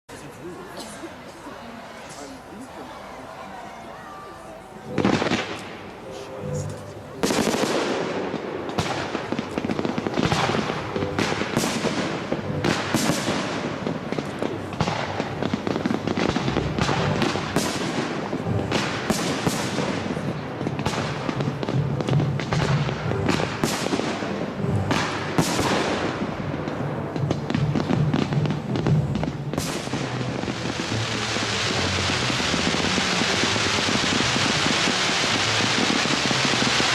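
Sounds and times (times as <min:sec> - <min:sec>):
fireworks crackling: 0:00.2 - 0:36.9.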